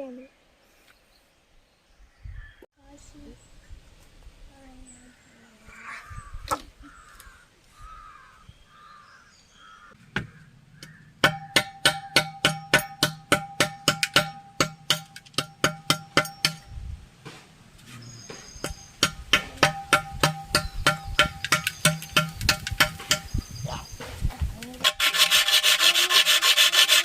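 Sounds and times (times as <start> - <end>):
music with percussive clicks: 19.0 - 23.3.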